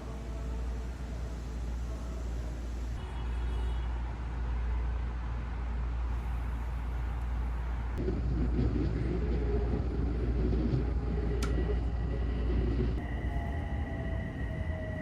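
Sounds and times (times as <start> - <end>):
large vehicle rumbling: 0.0 - 15.0
high-pitched squeal: 11.1 - 15.0.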